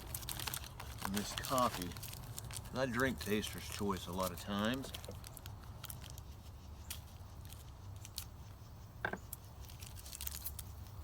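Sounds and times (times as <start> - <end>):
packets clicking and rustling: 0.0 - 6.0.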